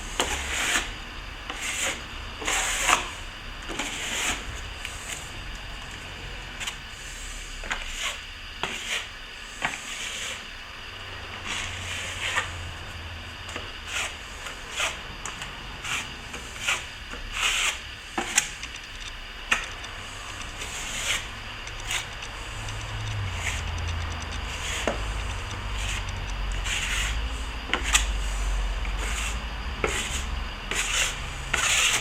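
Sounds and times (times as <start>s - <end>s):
trowel scraping plaster: 0.2s - 0.9s, 1.5s - 5.2s, 7.6s - 10.4s, 11.4s - 12.5s, 13.9s - 15.0s, 15.8s - 18.6s, 20.6s - 22.1s, 24.5s - 25.2s, 25.8s - 26.0s, 26.6s - 28.4s, 29.0s - 32.0s.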